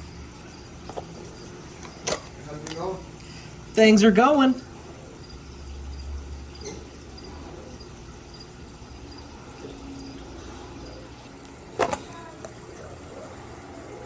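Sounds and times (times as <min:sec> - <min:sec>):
cricket chirping: 0:00.0 - 0:14.0.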